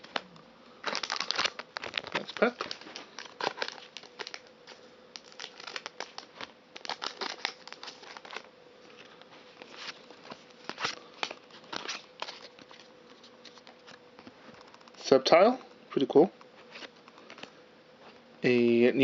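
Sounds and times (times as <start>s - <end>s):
foil wrapper crinkling: 0.8s - 15.1s.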